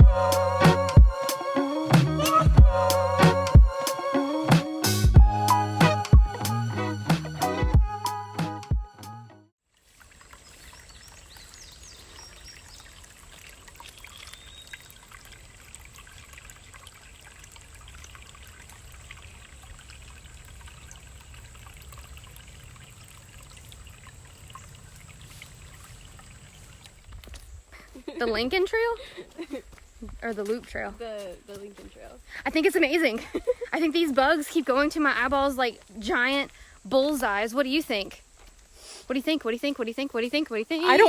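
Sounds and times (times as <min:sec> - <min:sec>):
river water flowing: 0:09.7 - 0:27.2, 0:40.8 - 0:41.0.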